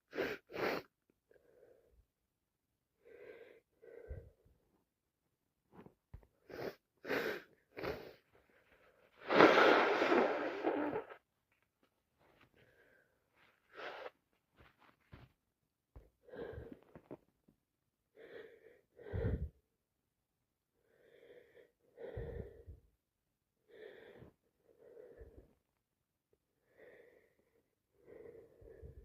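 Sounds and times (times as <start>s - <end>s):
wheezy breathing: 12.6s - 14.2s.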